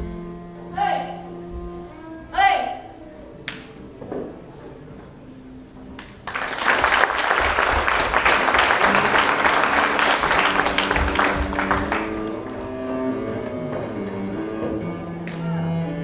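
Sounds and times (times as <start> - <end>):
background music: 0.0 - 16.0
audience applauding: 6.0 - 12.8.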